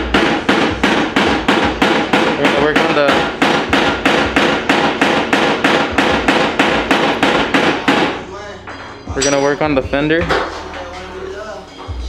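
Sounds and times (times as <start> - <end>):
hammer striking metal: 0.0 - 11.2.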